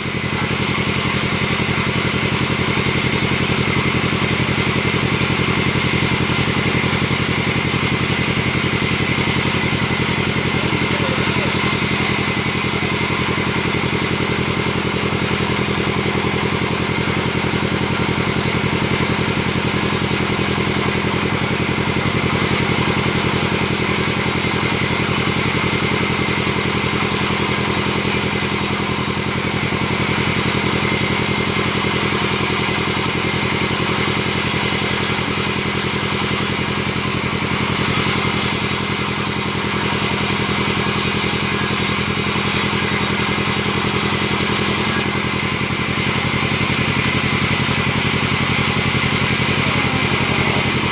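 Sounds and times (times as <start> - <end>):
band saw machine drone: 0.0 - 50.9
loud high hiss of saw: 0.0 - 50.9.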